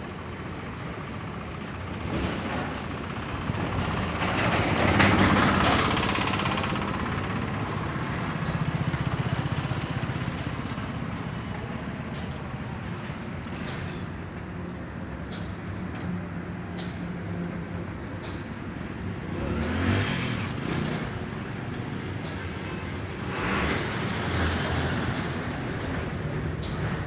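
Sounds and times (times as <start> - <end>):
vehicle engine running: 0.1 - 13.4.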